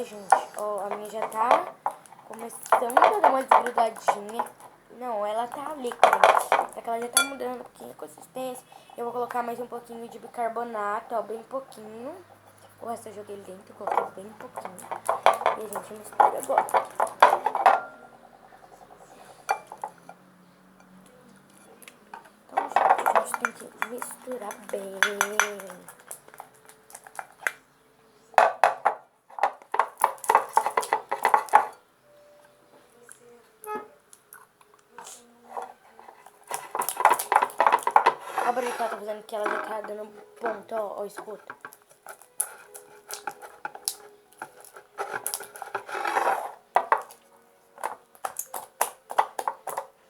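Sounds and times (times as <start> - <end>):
spoon stirring slime: 0.0 - 8.3, 13.0 - 20.2, 22.5 - 27.6, 33.7 - 49.9
spoon knocking container sides: 13.8 - 18.0, 22.6 - 27.6
spoon scraping container: 13.8 - 20.2, 35.0 - 40.7, 41.5 - 47.2.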